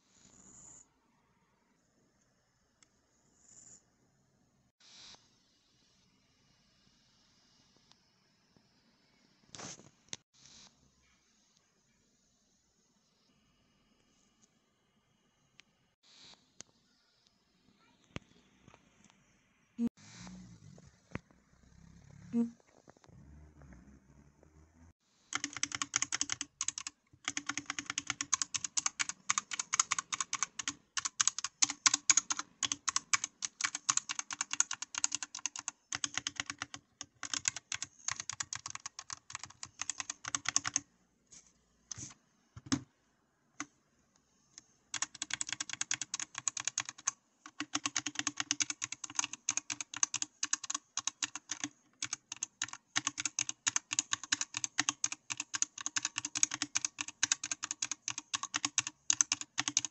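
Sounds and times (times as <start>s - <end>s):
mechanical keyboard typing: 25.3s - 40.9s, 42.6s - 42.8s, 44.9s - 59.9s.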